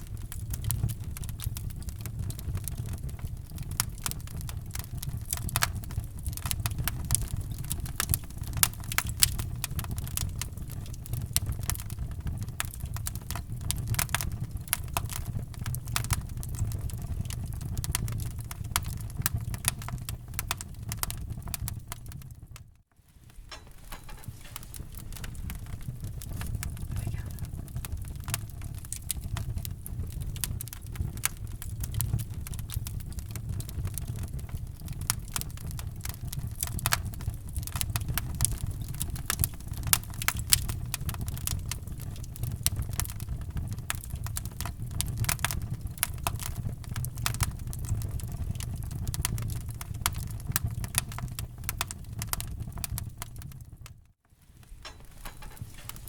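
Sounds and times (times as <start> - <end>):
wood fire crackling: 0.0 - 56.0.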